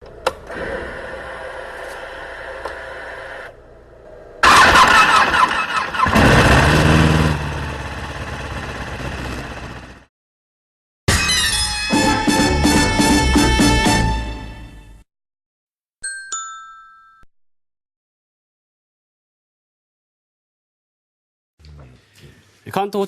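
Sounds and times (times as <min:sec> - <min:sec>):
motorcycle engine starting and running: 0:04.0 - 0:10.1.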